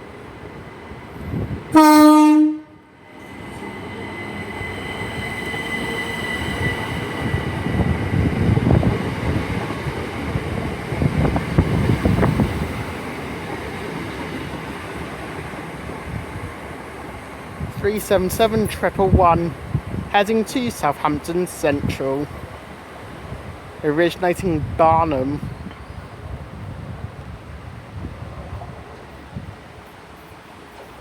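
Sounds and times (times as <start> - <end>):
electric train whine: 0.0 - 23.8
train horn blast: 1.7 - 2.9
wheels rumbling on rails: 2.6 - 23.8.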